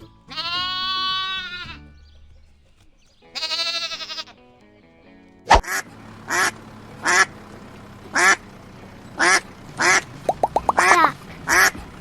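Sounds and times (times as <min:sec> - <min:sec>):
duck quacking: 0:05.5 - 0:07.3, 0:08.1 - 0:08.4, 0:09.2 - 0:11.8.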